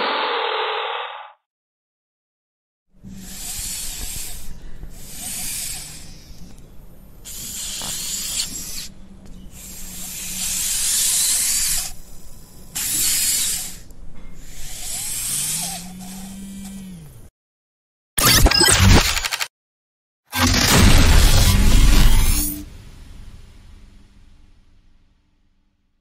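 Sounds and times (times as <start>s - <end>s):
robotic hissing bursts: 3.0s - 6.6s, 7.2s - 16.4s, 20.4s - 22.7s.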